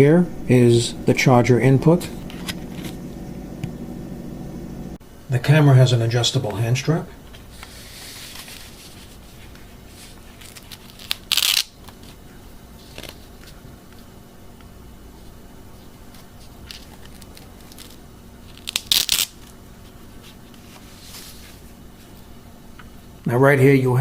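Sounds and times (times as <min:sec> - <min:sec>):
hook and loop strap ripping: 0:10.4 - 0:12.0, 0:16.7 - 0:19.4.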